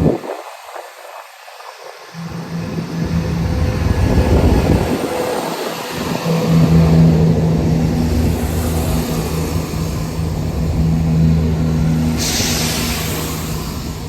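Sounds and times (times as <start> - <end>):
diesel train engine humming: 2.0 - 14.0
sudden hiss: 8.3 - 14.0.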